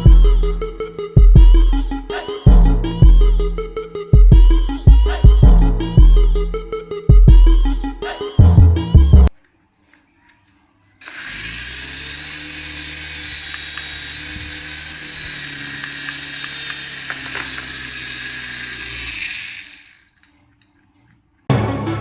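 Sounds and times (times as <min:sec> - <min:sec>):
small electric motor whirring: 0:11.0 - 0:20.2.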